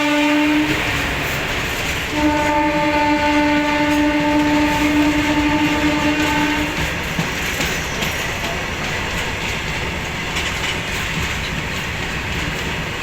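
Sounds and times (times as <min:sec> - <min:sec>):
locomotive horn blast: 0:00.0 - 0:01.0, 0:02.1 - 0:06.9
freight train rumbling: 0:00.0 - 0:13.0.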